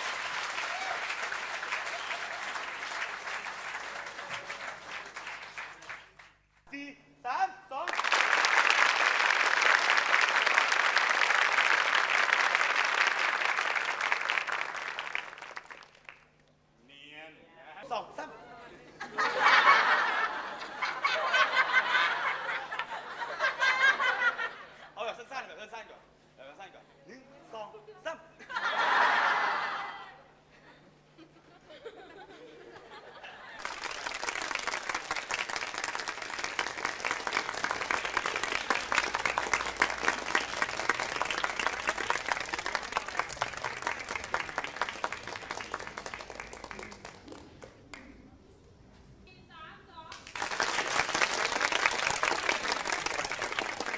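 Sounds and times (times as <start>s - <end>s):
audience applause: 0.0s - 6.4s, 7.9s - 16.3s, 33.0s - 48.1s, 50.1s - 53.9s
audience laughing: 17.9s - 25.0s, 28.4s - 34.1s, 38.0s - 44.5s.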